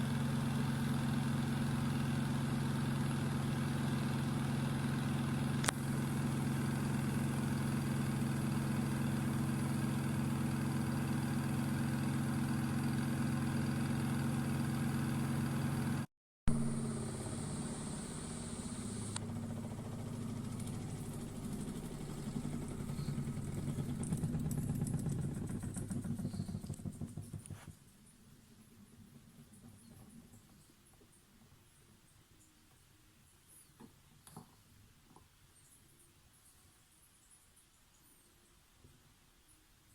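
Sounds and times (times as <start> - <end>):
washing machine motor humming: 0.0 - 27.5
uneven fluttering machine sound: 0.0 - 32.1.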